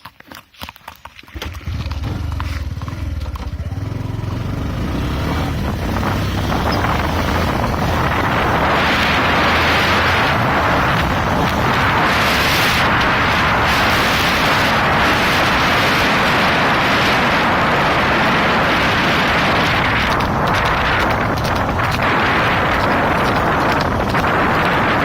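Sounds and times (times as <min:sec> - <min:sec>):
wind buffeting microphone: 0:01.6 - 0:25.0.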